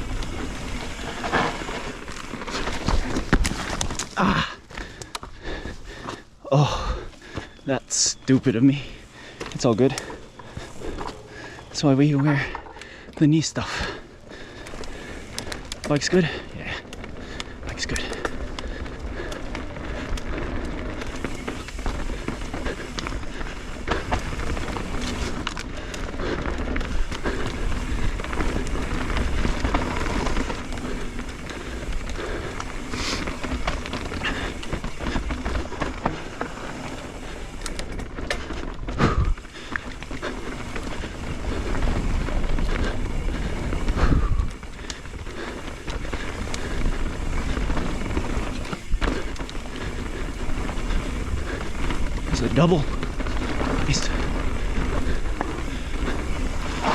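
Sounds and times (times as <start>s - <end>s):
bike rattling and clicking: 0.0s - 56.9s
tyres on dirt: 0.0s - 56.9s
wind rumbling on microphone: 17.9s - 38.2s, 38.8s - 56.9s.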